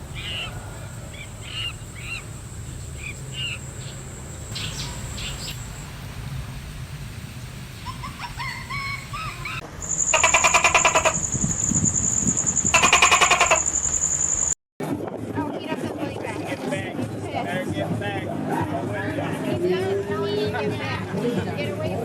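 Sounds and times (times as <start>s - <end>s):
gliding animal chirps: 0.0s - 5.8s, 7.8s - 14.6s
rapidly pulsing trills: 0.0s - 14.6s
steady high whine: 0.0s - 14.6s.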